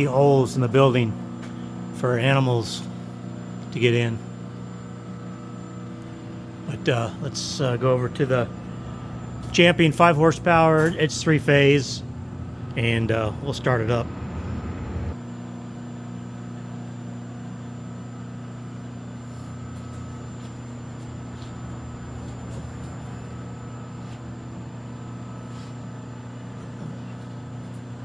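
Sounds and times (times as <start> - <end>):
electric motor hum: 2.9 - 15.2.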